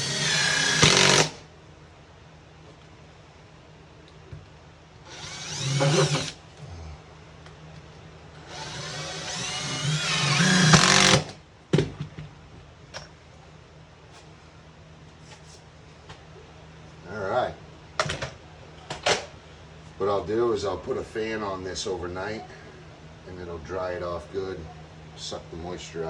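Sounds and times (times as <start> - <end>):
power drill driving screws: 0.0 - 1.4, 5.1 - 6.4, 8.4 - 11.4.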